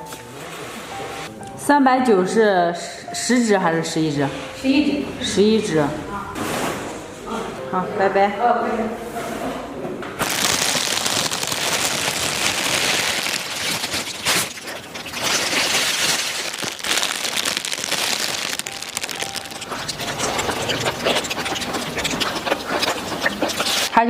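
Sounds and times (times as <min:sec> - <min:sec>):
rustling and crackling: 0:10.2 - 0:24.0.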